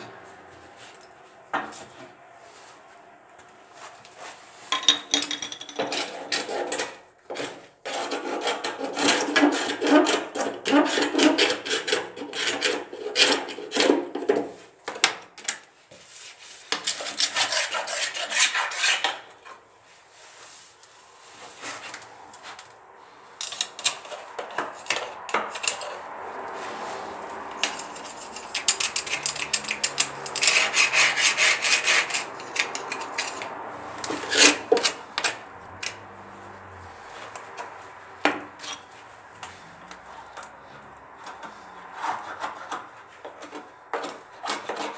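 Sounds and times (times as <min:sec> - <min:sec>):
rapid scraping strokes: 0:16.0 - 0:40.8.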